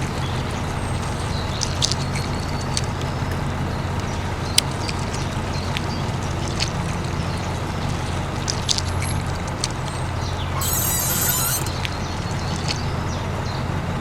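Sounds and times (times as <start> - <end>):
light clicks and taps: 0.8 - 12.9
high-pitched rattle: 4.0 - 13.0
small electric motor humming: 10.6 - 11.9.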